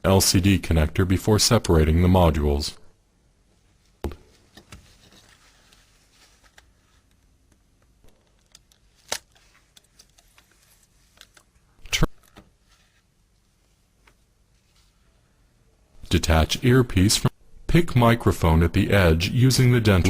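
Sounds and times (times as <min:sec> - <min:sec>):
plastic clicks and snaps: 0:07.2 - 0:10.4.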